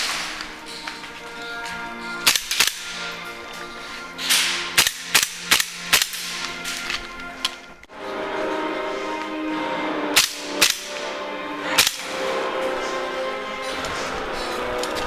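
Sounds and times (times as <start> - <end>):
background music: 0.0 - 15.0
airsoft gun shots: 10.2 - 11.0.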